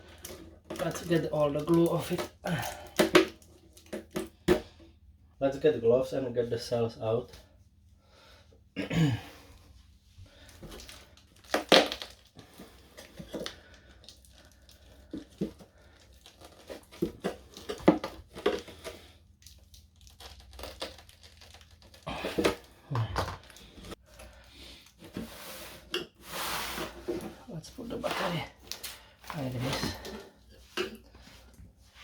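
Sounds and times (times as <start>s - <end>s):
crinkling and tearing handling noises: 0.1s - 4.2s, 10.4s - 25.3s.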